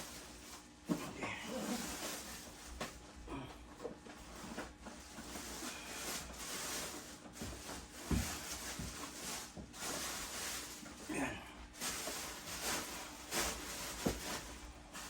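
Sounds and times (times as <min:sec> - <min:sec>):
packaging and plastic rustling: 0:00.0 - 0:03.2, 0:04.0 - 0:15.0.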